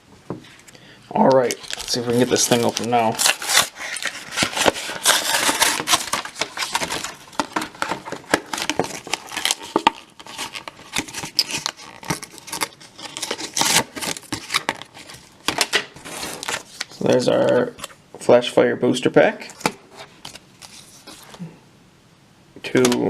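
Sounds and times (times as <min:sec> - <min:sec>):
plastic crackling and crinkling: 0:00.5 - 0:17.9.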